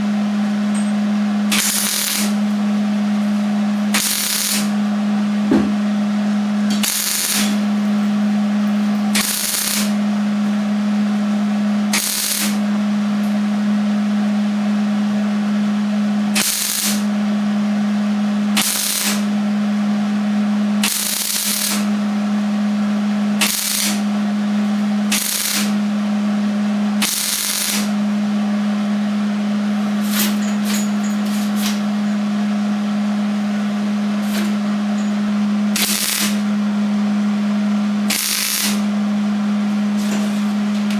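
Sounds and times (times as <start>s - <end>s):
steady low hum: 0.0s - 40.9s
welding arc crackling: 1.5s - 4.9s, 6.7s - 10.6s, 11.9s - 13.4s, 16.4s - 17.2s, 18.6s - 19.4s, 20.8s - 22.4s, 23.4s - 25.9s, 27.0s - 28.0s, 29.7s - 32.1s, 34.2s - 36.6s, 38.1s - 39.0s, 39.9s - 40.9s.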